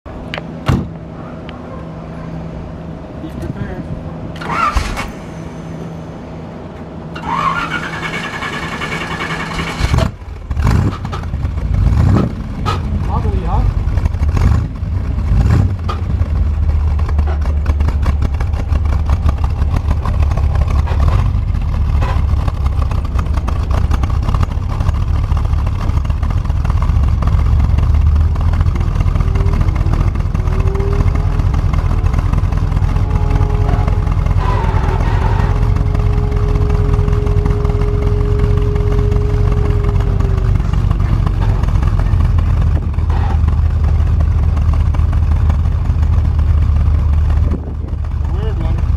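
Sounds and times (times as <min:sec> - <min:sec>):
car engine idling: 0:00.1 - 0:48.9
clutch screeching squeal: 0:04.4 - 0:06.0, 0:07.1 - 0:10.0, 0:28.8 - 0:41.4.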